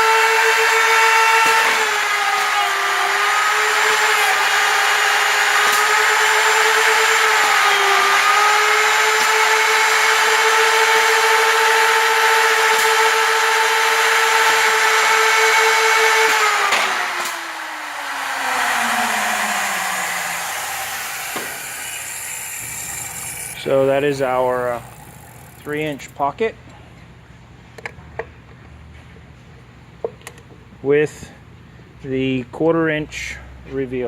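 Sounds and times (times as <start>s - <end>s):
routers whining: 15.9s - 26.1s
routers spinning down: 16.6s - 26.1s.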